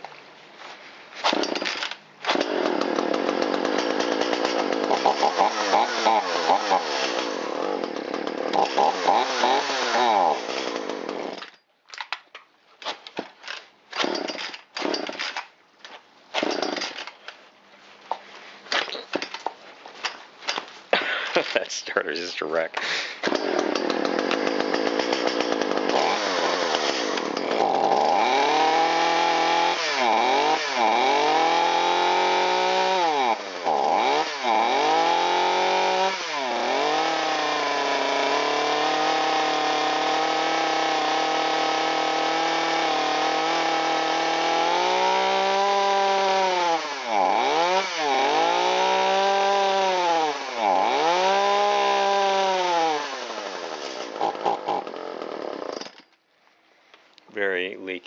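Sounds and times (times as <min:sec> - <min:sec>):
chainsaw engine running: 0:01.3 - 0:11.5, 0:14.0 - 0:15.2, 0:16.4 - 0:16.9, 0:23.2 - 0:55.9.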